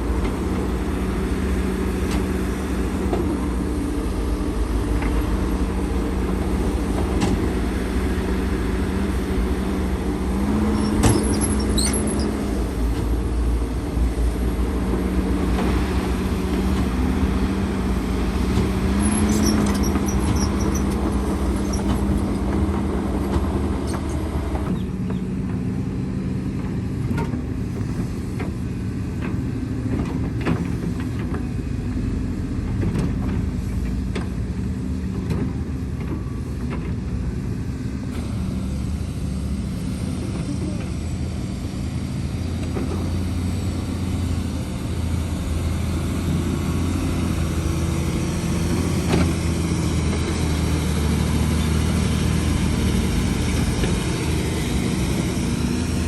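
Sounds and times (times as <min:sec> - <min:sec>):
heavy machinery diesel engines: 0:00.0 - 0:56.0
high squeal: 0:10.6 - 0:12.5.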